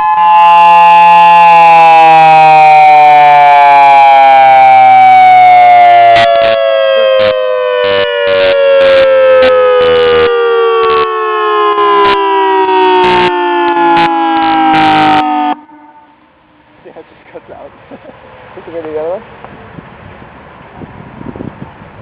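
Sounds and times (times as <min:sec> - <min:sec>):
electronic siren winding down: 0:00.0 - 0:16.7
sharp crackles: 0:07.2 - 0:10.3.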